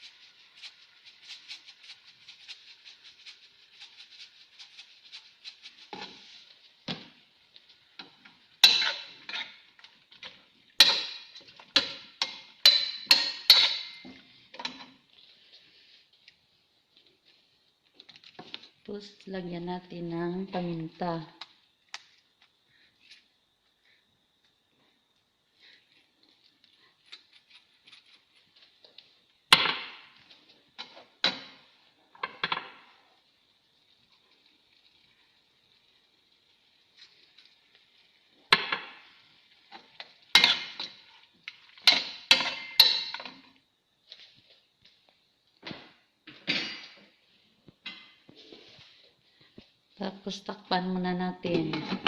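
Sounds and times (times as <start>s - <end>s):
faint sizzle: 0.0s - 52.0s
metal utensil clanking on pot: 8.6s - 9.6s, 10.8s - 14.9s, 41.8s - 43.4s.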